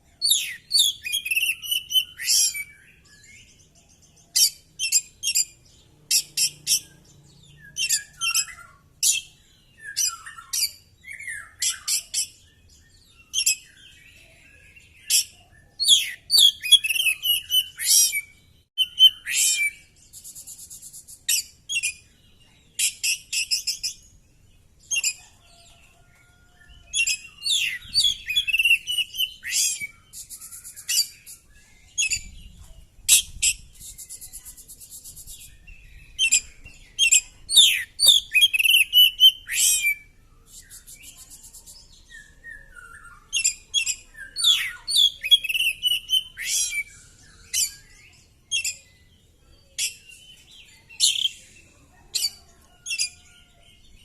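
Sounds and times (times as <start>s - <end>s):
songbird whistles and chirps: 0.0s - 54.0s.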